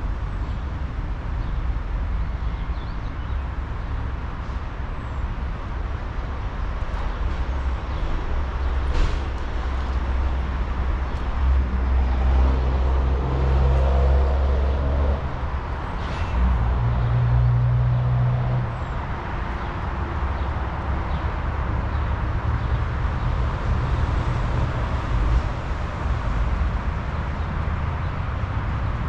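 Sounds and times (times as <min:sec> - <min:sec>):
road traffic rumble: 0:00.0 - 0:29.0
vehicle engines passing: 0:00.0 - 0:29.0.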